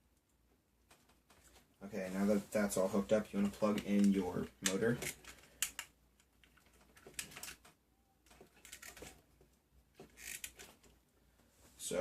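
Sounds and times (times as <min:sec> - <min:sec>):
wire connectors clicking and rattling: 0:03.4 - 0:11.0.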